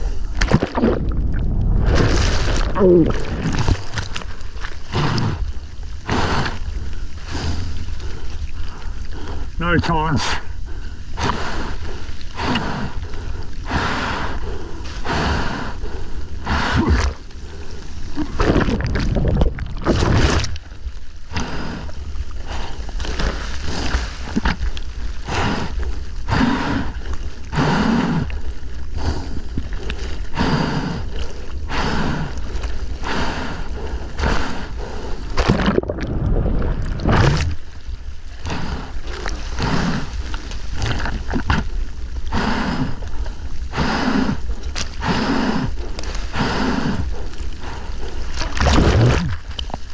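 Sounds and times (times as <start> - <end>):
person breathing hard: 0.0 - 0.4, 3.6 - 9.6, 10.2 - 18.4, 21.3 - 24.2, 25.2 - 35.5, 38.3 - 40.2, 42.2 - 48.8
water sloshing and splashing: 0.0 - 13.7, 15.9 - 26.3, 34.9 - 42.3, 44.4 - 45.0, 47.1 - 49.9
low rumble of wind and surf: 0.0 - 49.9.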